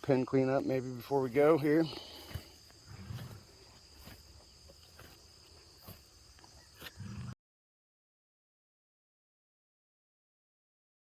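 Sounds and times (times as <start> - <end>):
insects chirring: 0.0 - 7.4
footsteps: 1.3 - 7.0.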